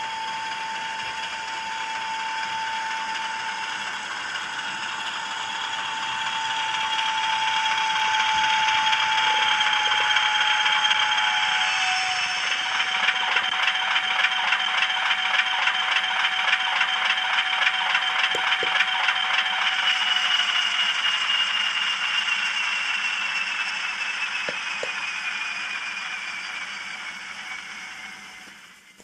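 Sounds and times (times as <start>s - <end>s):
diesel engine sound from small speaker: 2.6s - 28.8s
model train wheels rattling on track: 3.4s - 25.0s.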